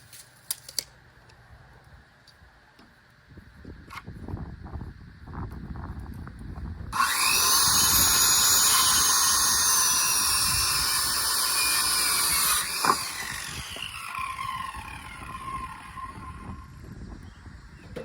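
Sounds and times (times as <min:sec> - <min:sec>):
saw blade cutting wood: 0:07.0 - 0:16.7.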